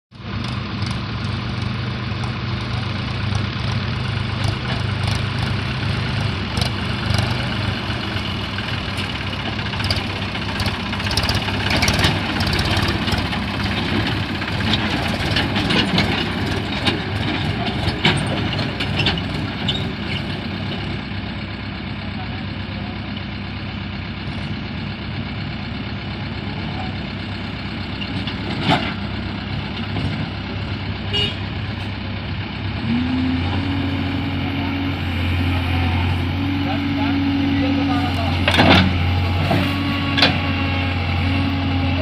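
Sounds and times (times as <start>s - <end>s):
heavy diesel engines running: 0.1s - 42.0s
knocks and clanks: 6.6s - 20.8s, 38.4s - 40.6s.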